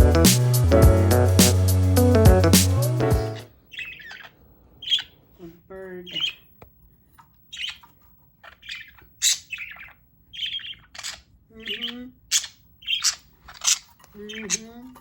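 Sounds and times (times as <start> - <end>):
budgerigars chirping: 3.2 - 5.2, 6.0 - 6.5, 7.5 - 14.8.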